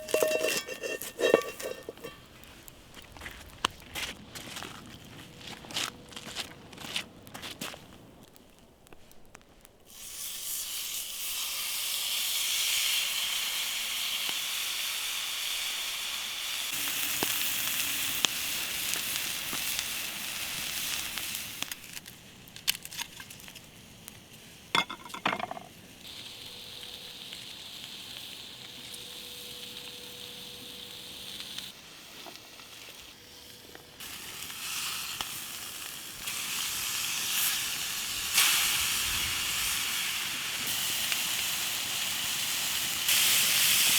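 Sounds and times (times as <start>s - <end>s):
fire snapping: 0.0s - 5.2s, 16.7s - 24.7s
campfire hissing and crackling: 0.0s - 43.9s.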